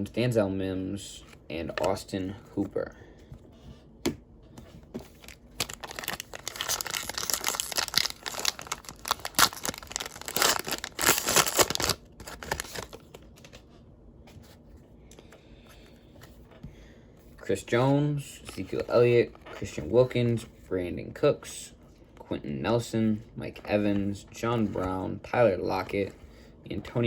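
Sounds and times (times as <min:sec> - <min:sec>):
plastic wrapper tearing and crinkling: 0:05.1 - 0:13.2.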